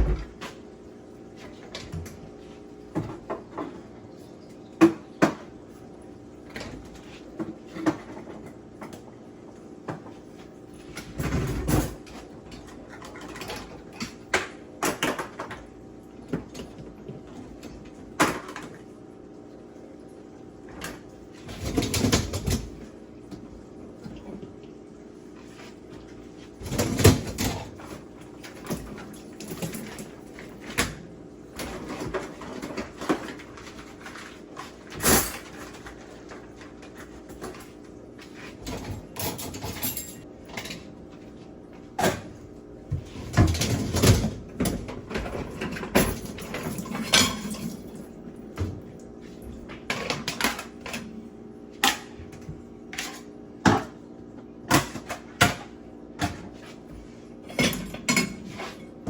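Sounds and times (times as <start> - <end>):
dishes and cutlery clattering: 43.3 - 47.9.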